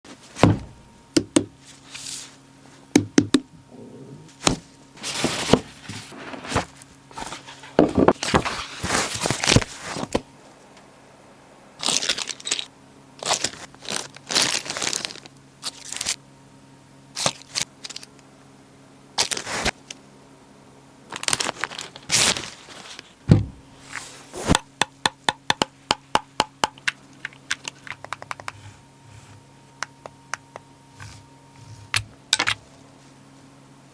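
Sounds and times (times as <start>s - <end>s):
faint steady hum: 0.1s - 33.9s
sharp knocks and clicks: 3.0s - 3.5s
cardboard and plastic rustling: 4.3s - 10.3s, 13.2s - 16.2s, 21.1s - 24.6s.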